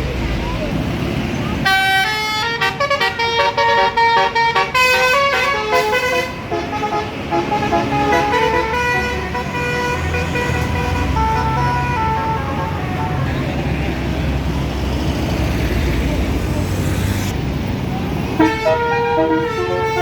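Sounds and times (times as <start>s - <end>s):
bus engine rumble: 0.0s - 20.0s
multi-trumpet air horn tune: 1.6s - 13.4s, 18.4s - 20.0s.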